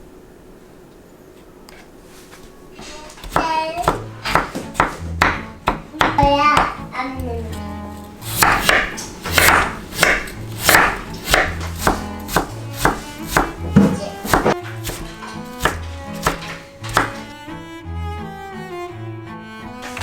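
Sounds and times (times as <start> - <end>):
background music: 2.7 - 20.0
knife chopping on cutting board: 2.8 - 17.4.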